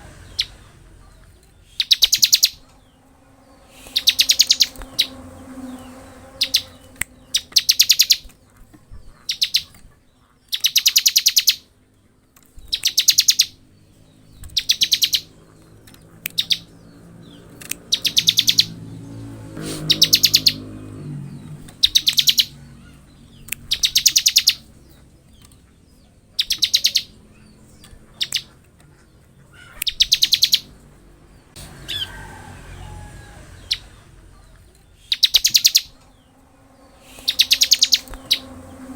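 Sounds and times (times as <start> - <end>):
bird chirps: 0.0 - 11.7, 12.4 - 32.1, 33.5 - 38.9
bird buzzy trills: 1.6 - 11.7, 12.6 - 25.1, 34.9 - 38.9.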